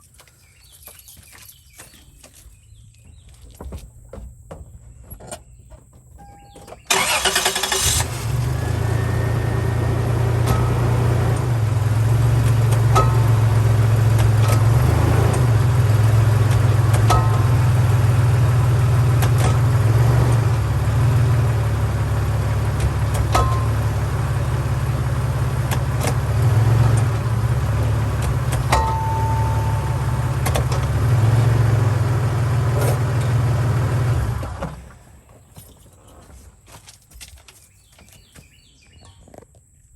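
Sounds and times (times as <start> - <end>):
truck engine running: 6.3 - 35.0.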